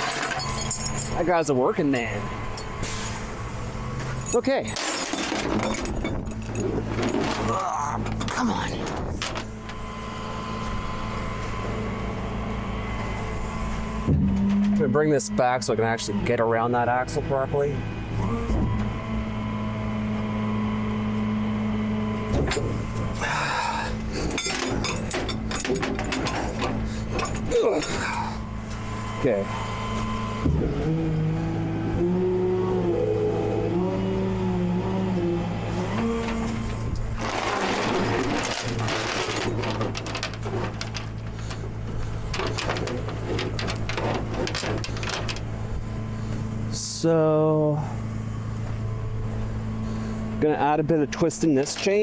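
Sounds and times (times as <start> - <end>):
metal chain clinking and rattling: 0.0 - 2.9, 4.1 - 9.6, 22.5 - 28.4, 36.5 - 41.6, 42.2 - 45.6
hydraulics humming: 0.0 - 52.0
metallic clanks and knocks: 4.0 - 9.8, 22.3 - 23.2, 24.0 - 28.4, 36.2 - 41.7, 42.3 - 45.5
scraping: 22.4 - 30.8, 35.7 - 46.6.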